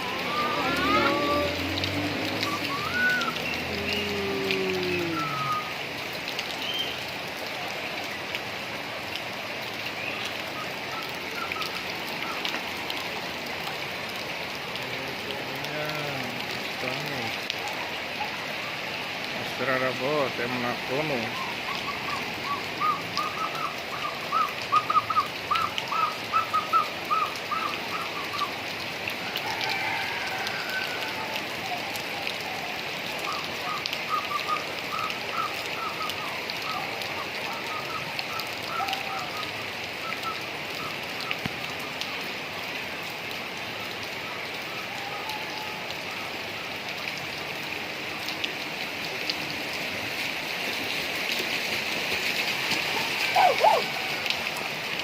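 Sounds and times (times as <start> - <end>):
water hissing: 0.0 - 5.7
flood water rushing: 0.0 - 55.0.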